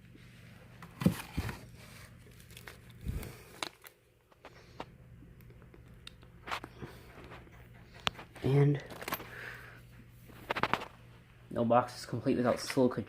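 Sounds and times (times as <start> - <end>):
packaging crinkling: 1.0 - 4.9, 10.3 - 11.0.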